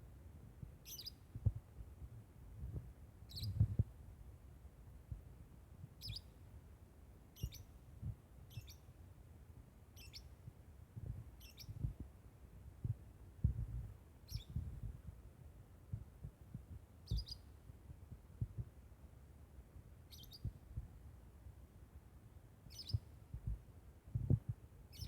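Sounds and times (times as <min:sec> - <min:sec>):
bird shrill chirping calls: 0:00.9 - 0:01.2, 0:07.4 - 0:07.6, 0:08.5 - 0:08.8, 0:10.0 - 0:10.2, 0:11.4 - 0:11.8, 0:14.3 - 0:14.6, 0:22.7 - 0:23.0.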